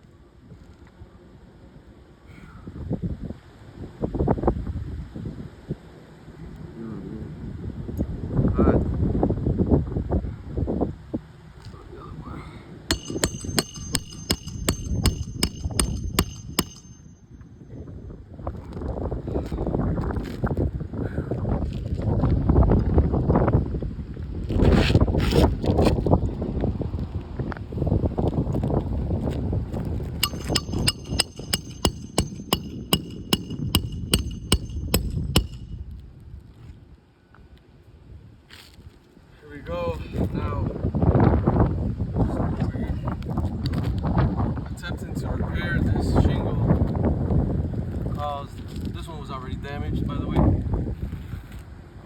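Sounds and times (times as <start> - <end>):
metal hammer strikes: 12.9 - 17.3, 30.2 - 35.8
wind rumbling on microphone: 18.2 - 30.2, 39.8 - 52.0.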